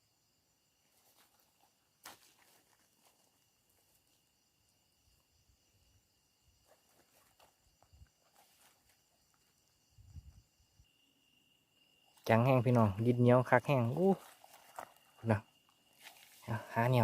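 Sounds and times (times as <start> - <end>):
night insects trilling: 0.0 - 17.0
soft rustles: 6.6 - 9.5, 14.2 - 15.2, 15.9 - 16.6.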